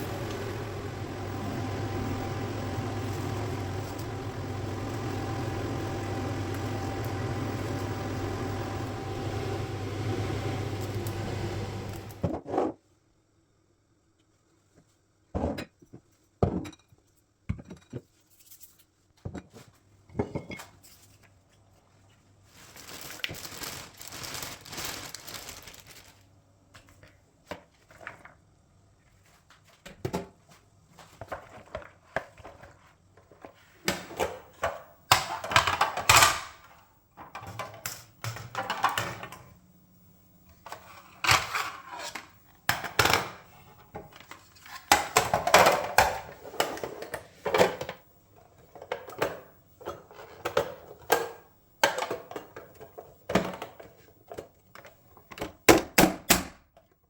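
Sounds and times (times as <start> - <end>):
rustling and crinkling: 20.8 - 33.8.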